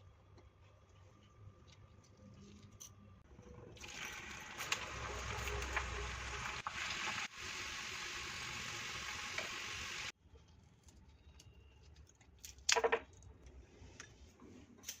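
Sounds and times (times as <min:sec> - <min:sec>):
food frying in hot oil: 0:03.8 - 0:10.1.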